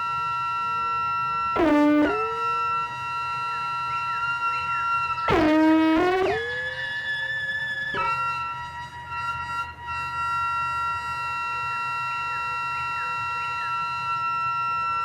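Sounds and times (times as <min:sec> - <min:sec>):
faint falling blips: 0:01.6 - 0:02.8, 0:05.3 - 0:07.0
synthesizer drone: 0:01.6 - 0:03.0, 0:05.3 - 0:07.2.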